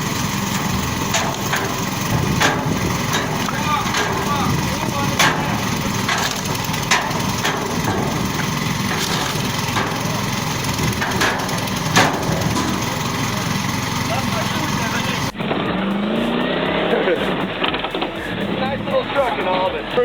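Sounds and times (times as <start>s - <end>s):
wood cracking and splintering: 0.0s - 15.3s
steady rough noise: 0.0s - 20.0s.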